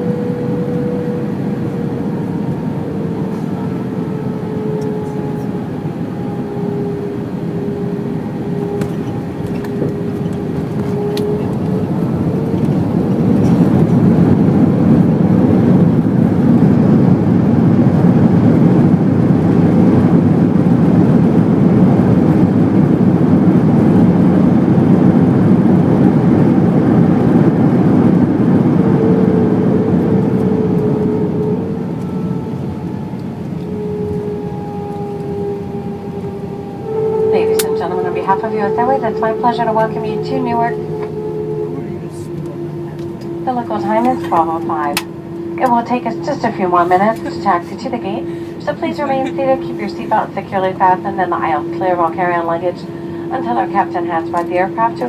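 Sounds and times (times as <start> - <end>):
deep jet engine rumble: 0.0 - 55.0
jet engine whine: 0.0 - 55.0.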